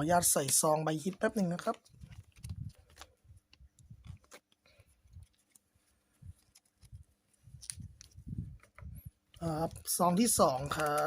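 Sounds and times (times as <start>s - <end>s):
card sliding into plastic sleeve: 10.6s - 11.0s.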